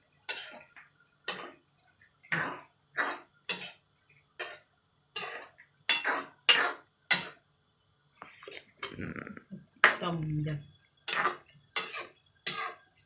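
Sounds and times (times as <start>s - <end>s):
utensils clinking against cookware: 0.2s - 0.7s, 1.3s - 1.6s, 3.0s - 3.8s, 5.2s - 7.4s, 9.8s - 13.0s.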